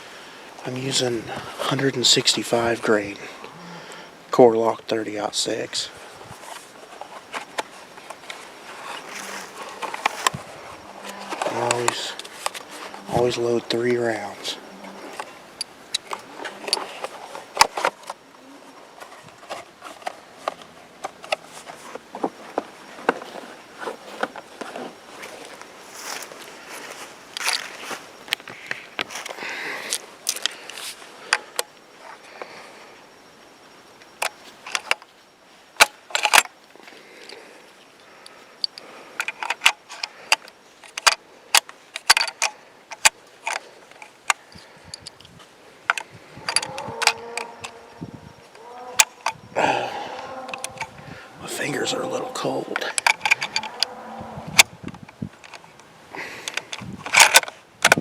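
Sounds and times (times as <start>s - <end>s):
metallic clicks of rifle action: 35.8s - 36.5s, 38.2s - 45.3s, 45.9s - 47.9s, 50.1s - 50.9s, 52.8s - 54.0s, 54.6s - 58.0s
cartridges clicking into a rifle: 45.9s - 47.8s, 52.9s - 54.0s.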